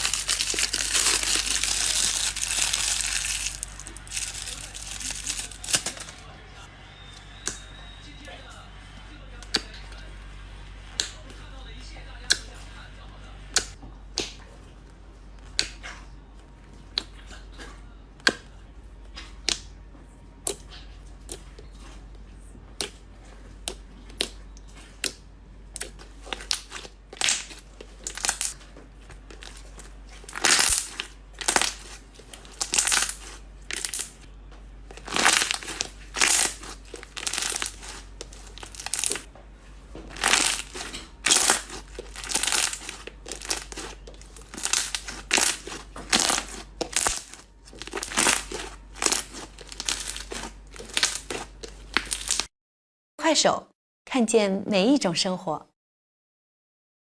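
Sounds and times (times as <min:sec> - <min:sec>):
slime popping: 0:00.0 - 0:06.1, 0:35.0 - 0:39.2, 0:40.1 - 0:52.5
slime crackling squeezes: 0:00.0 - 0:06.2, 0:25.0 - 0:28.6, 0:29.3 - 0:34.2, 0:34.9 - 0:39.3, 0:40.1 - 0:52.5.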